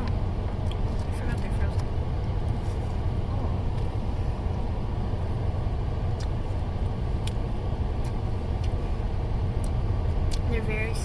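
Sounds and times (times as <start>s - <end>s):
steady low rumble: 0.0s - 11.0s
chewing crunches: 6.1s - 6.4s, 9.5s - 10.5s.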